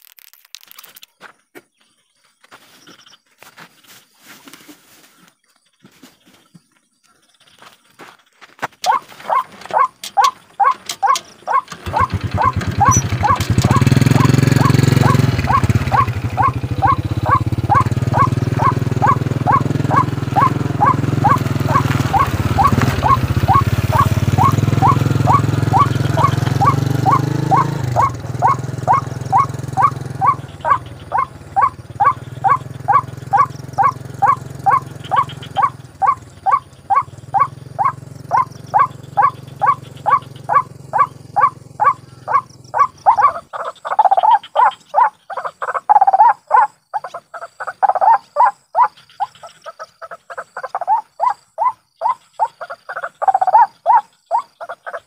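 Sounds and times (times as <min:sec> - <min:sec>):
engine running low: 0:08.8 - 0:45.2
waterhen calling: 0:08.8 - 0:55.0.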